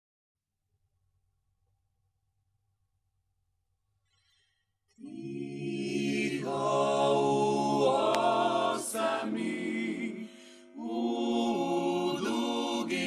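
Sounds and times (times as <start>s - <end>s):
vocal group singing a hymn: 5.0s - 13.0s.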